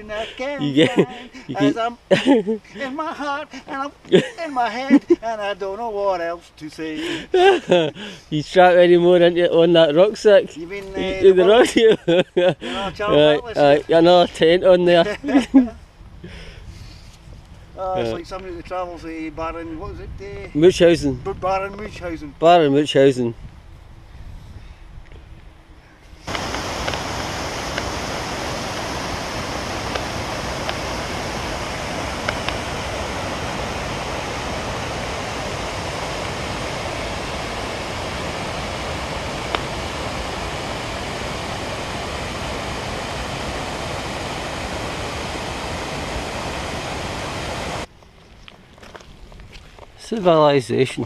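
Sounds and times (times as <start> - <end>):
rushing water: 26.3 - 47.9.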